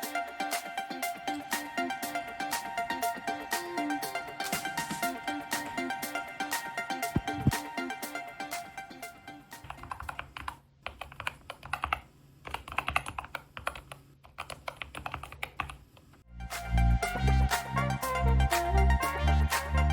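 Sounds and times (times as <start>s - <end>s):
background music with heavy bass: 0.0s - 9.3s, 16.3s - 19.9s.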